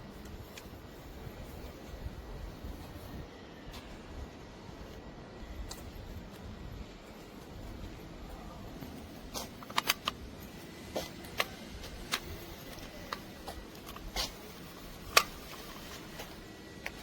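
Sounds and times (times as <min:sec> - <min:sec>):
dog leash plastic clicks: 0:08.9 - 0:10.2.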